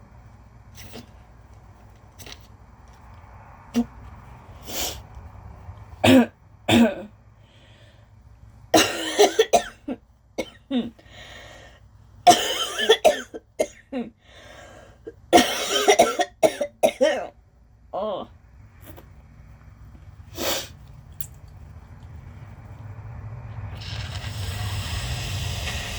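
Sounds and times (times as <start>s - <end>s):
woman coughing: 6.0s - 7.1s, 8.8s - 11.0s, 12.3s - 14.2s, 15.3s - 17.4s.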